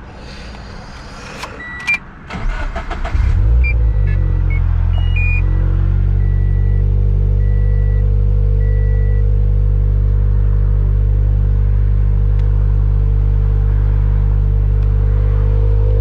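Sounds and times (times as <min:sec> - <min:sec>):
engine starter cranking: 0:01.2 - 0:03.8
high electronic beep: 0:01.5 - 0:02.0, 0:03.6 - 0:05.6, 0:06.2 - 0:08.0
car engine idling: 0:02.3 - 0:16.0.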